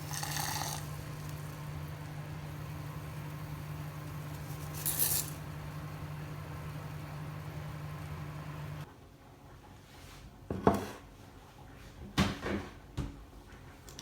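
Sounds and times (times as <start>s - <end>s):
hissing rattle: 0.0s - 8.8s
low machine hum: 0.0s - 8.9s.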